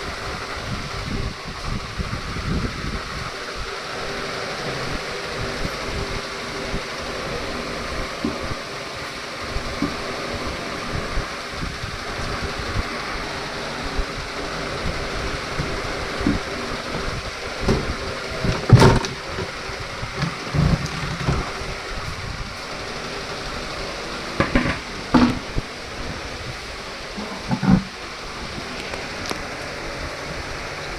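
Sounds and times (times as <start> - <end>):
washing machine running: 0.0 - 30.9
washing machine knocks and thumps: 8.2 - 11.2, 14.9 - 21.9, 24.4 - 25.7, 27.1 - 28.0.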